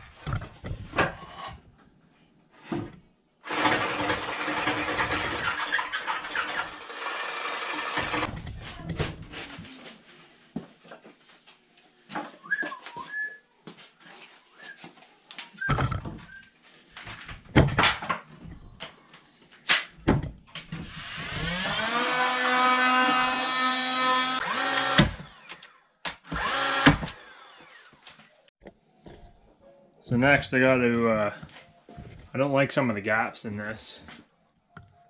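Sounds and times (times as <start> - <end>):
power drill whining: 3.5 - 8.3, 20.9 - 28.5.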